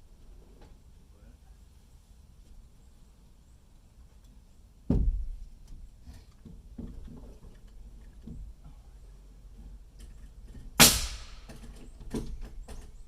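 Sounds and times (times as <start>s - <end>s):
loud bang with ringing tail: 10.8s - 11.5s.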